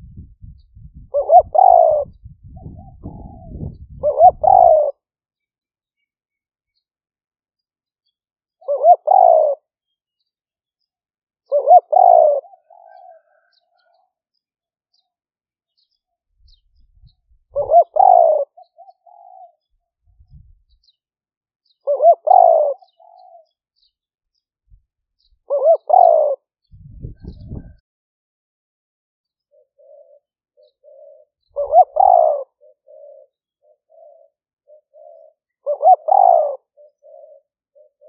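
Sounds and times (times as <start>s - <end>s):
dove cooing: 1.0s - 5.0s, 8.6s - 9.7s, 11.4s - 14.1s, 17.5s - 19.7s, 21.8s - 23.9s, 25.4s - 27.8s, 29.5s - 38.0s.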